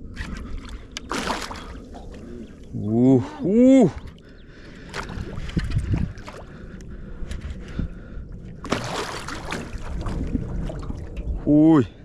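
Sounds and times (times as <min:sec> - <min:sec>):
water slapping against boat: 0:00.1 - 0:02.2, 0:04.8 - 0:06.6, 0:08.6 - 0:11.4
loud splash: 0:01.1 - 0:01.7, 0:08.7 - 0:11.1.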